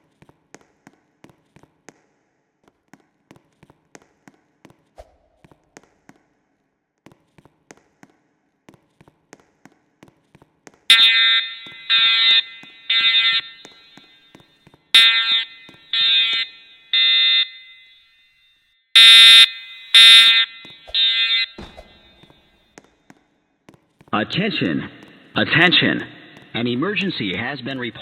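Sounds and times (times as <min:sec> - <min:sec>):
buzzy fire alarm blasts: 0:10.9 - 0:14.3, 0:14.9 - 0:22.4.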